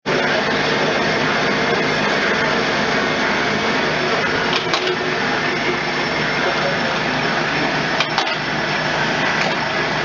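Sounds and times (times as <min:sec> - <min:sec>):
automatic lathe running: 0:00.1 - 0:10.0.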